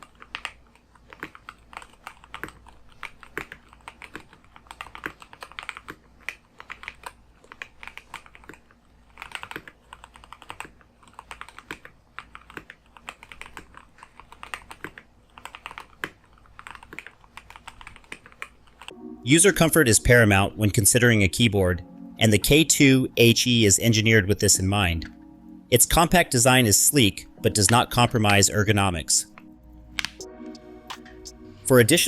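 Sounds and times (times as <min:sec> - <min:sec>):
typing on keyboard: 0:00.0 - 0:19.0.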